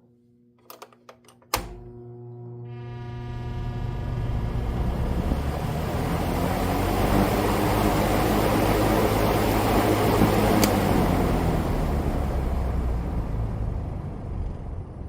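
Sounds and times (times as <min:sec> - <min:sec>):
fan motor hum: 0:00.6 - 0:14.9
rush of air from fan blades: 0:04.3 - 0:13.3.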